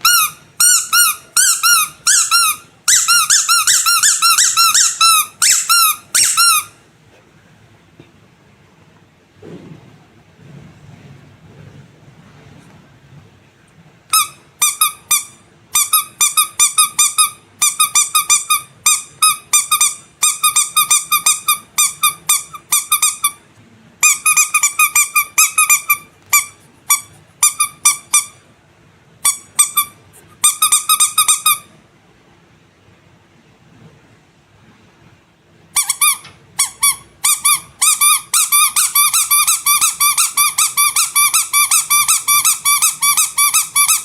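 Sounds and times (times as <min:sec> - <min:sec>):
squeaky rubber toy squeaks: 0:00.0 - 0:06.8, 0:14.1 - 0:23.4, 0:24.0 - 0:28.4, 0:29.2 - 0:31.7, 0:35.7 - 0:44.0.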